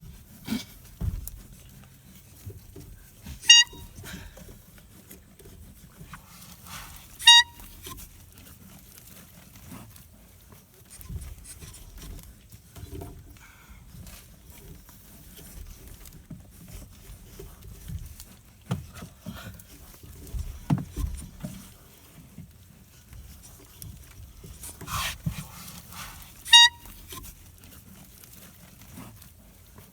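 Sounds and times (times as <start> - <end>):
rustling: 0.0 - 29.9
bike horn honking: 3.4 - 4.0, 7.2 - 7.7, 26.5 - 26.9
dull knocks: 20.3 - 21.7.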